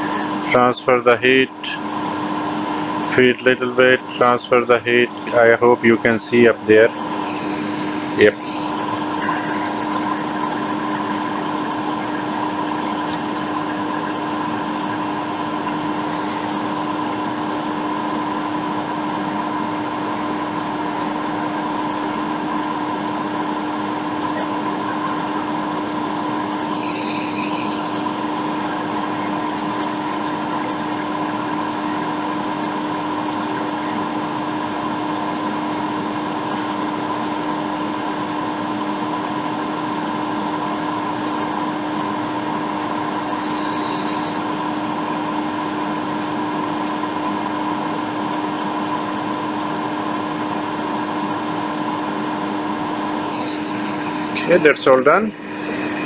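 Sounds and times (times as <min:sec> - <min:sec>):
small electric motor humming: 0:00.0 - 0:00.5, 0:01.3 - 0:56.0
faint high chirp: 0:43.3 - 0:44.6.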